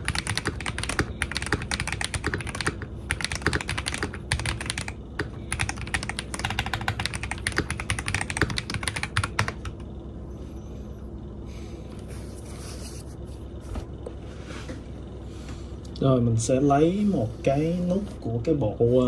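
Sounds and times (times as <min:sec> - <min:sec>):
fast mechanical keyboard typing: 0:00.0 - 0:09.8.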